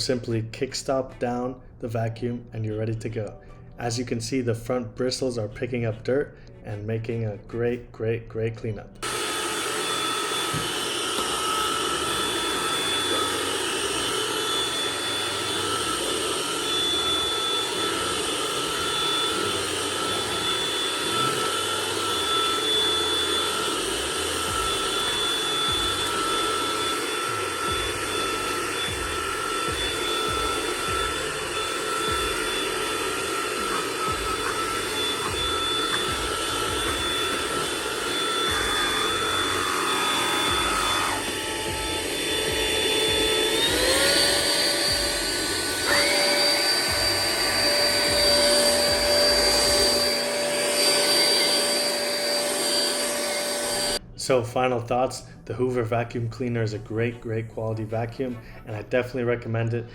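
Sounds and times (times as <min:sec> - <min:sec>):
vacuum cleaner running: 0:09.0 - 0:54.2.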